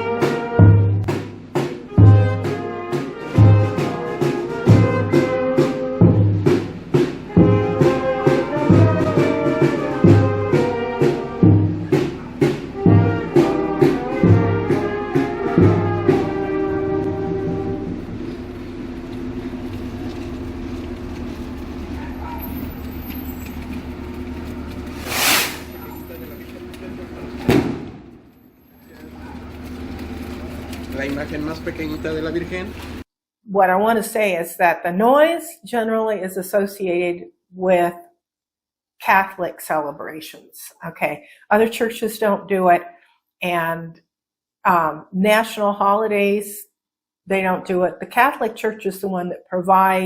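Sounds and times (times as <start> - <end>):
brass band playing a march: 0.0 - 18.3
street noise: 0.0 - 33.1.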